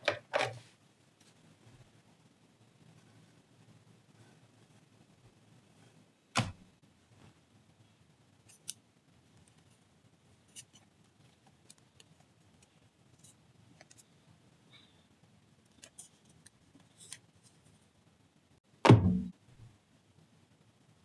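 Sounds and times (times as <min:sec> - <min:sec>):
sharp knock: 0:06.4 - 0:06.6, 0:18.9 - 0:19.4.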